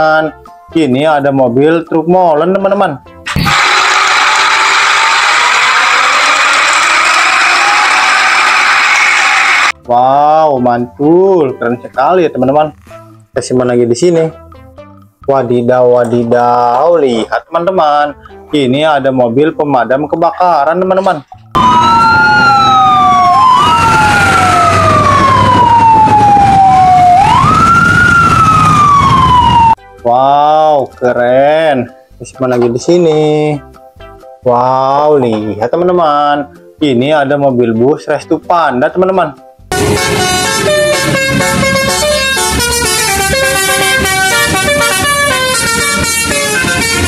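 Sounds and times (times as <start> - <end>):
multi-tone air horn tune: 3.3 - 4.8, 39.7 - 47.0
fire engine siren wailing: 3.3 - 9.8, 21.5 - 29.8, 39.7 - 47.0
engine running: 39.7 - 47.0.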